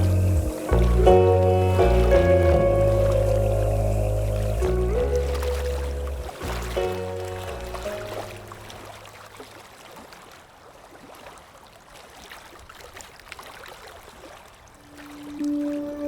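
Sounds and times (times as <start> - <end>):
flute-like note: 0.0 - 8.0, 14.8 - 16.0
soft music: 0.0 - 9.0, 15.0 - 16.0
water trickling and splashing: 0.0 - 16.0.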